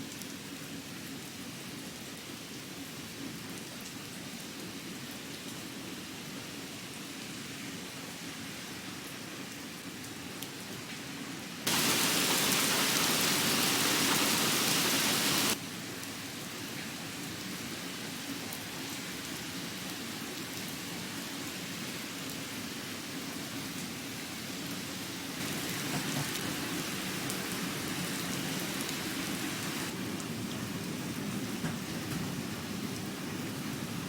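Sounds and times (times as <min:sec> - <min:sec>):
steady rain falling: 0:00.0 - 0:34.0
loud high hiss: 0:11.7 - 0:15.6.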